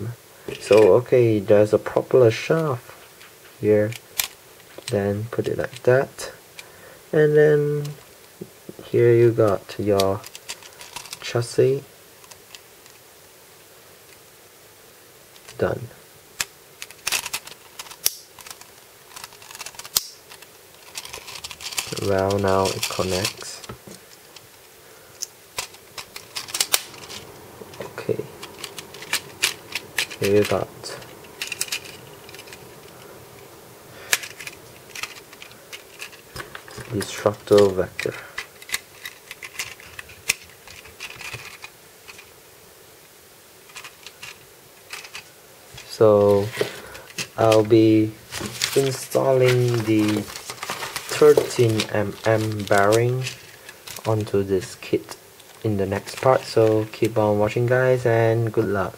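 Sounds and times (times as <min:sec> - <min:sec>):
plastic parts clicking and clattering: 0:00.5 - 0:01.0, 0:02.6 - 0:06.7, 0:09.4 - 0:11.4, 0:16.4 - 0:33.2, 0:34.0 - 0:42.3, 0:43.7 - 0:58.8
sharp plastic snaps: 0:16.4 - 0:20.4.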